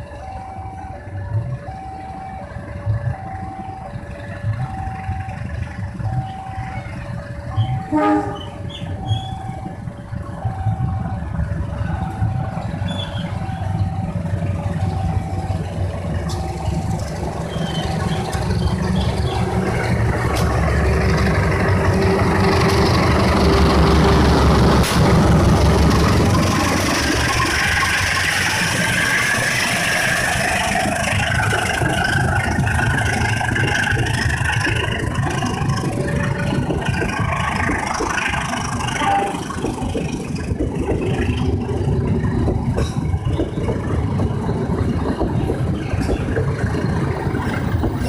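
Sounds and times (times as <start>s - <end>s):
two-tone crossing alarm: 0.0s - 40.0s
train rumbling: 0.0s - 48.0s
train horn blast: 7.9s - 8.6s, 39.0s - 39.5s.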